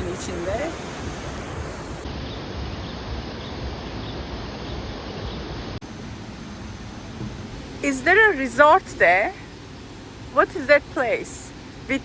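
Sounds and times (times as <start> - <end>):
waterfall rushing: 0.0 - 5.8
wind on microphone: 0.0 - 5.8.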